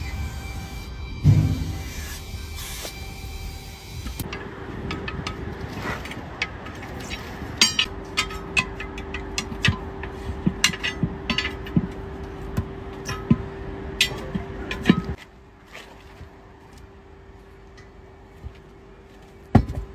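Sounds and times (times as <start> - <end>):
steady hum: 0.0 - 15.6
metal tools knocking and clinking: 4.2 - 12.0, 14.0 - 15.2.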